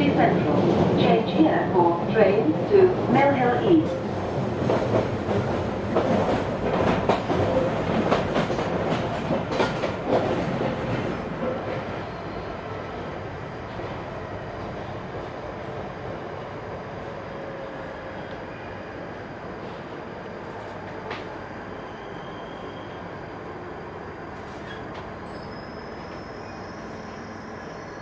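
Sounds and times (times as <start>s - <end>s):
train hum: 0.0s - 28.0s
train wheels clattering: 3.9s - 11.9s.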